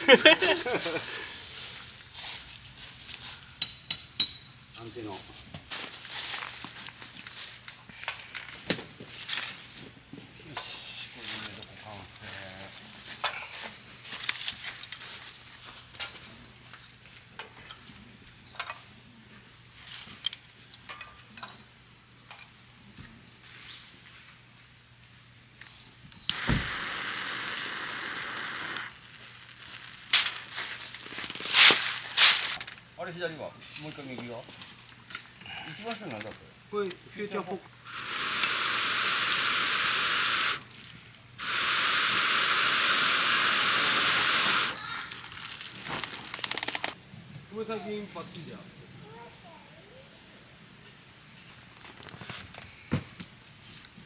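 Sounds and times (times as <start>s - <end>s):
loud steady hiss: 0.0s - 2.0s, 26.1s - 34.5s, 35.7s - 47.0s
camping gear clicks and rustles: 45.2s - 47.0s.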